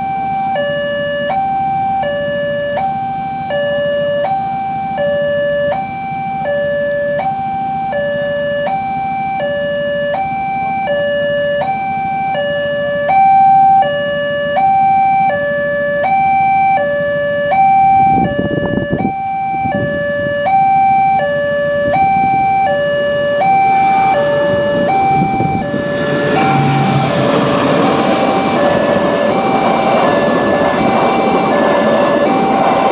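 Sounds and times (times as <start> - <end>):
crossing alarm two-tone signal: 0.0 - 32.9
approaching train: 21.9 - 32.9
low rumble: 23.3 - 32.9.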